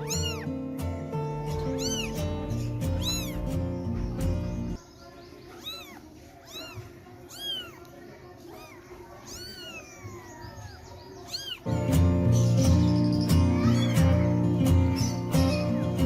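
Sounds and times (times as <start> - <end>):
kitten meowing: 0.0 - 0.6, 1.5 - 3.7, 5.6 - 11.8, 13.5 - 14.3.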